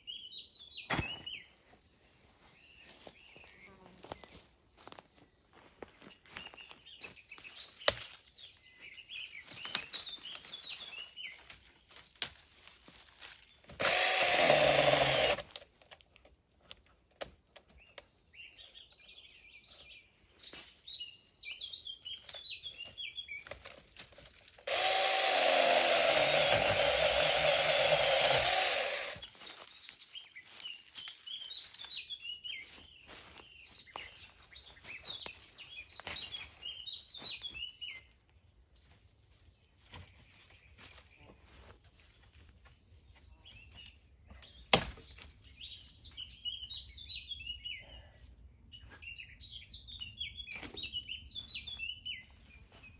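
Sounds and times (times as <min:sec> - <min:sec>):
birds chirping: 0:00.0 - 0:04.5, 0:05.2 - 0:12.1, 0:24.7 - 0:41.6
mini chainsaw cutting wood: 0:13.7 - 0:15.7, 0:24.6 - 0:29.3.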